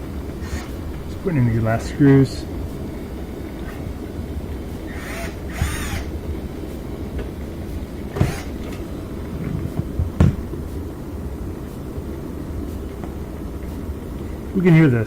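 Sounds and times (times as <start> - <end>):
dishwasher pump humming: 0.0 - 15.0
sharp knocks: 8.1 - 8.8, 9.4 - 10.5.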